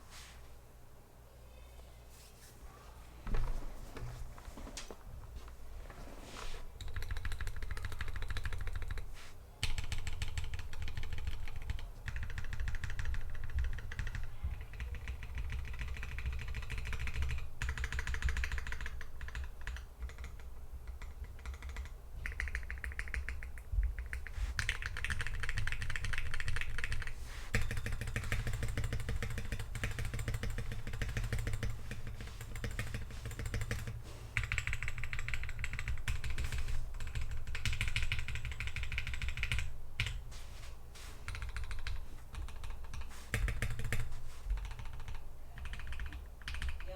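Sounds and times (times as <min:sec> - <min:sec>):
fast keyboard typing: 0:06.8 - 0:09.0, 0:09.6 - 0:40.2, 0:41.2 - 0:46.9
steady low hum: 0:19.4 - 0:46.9.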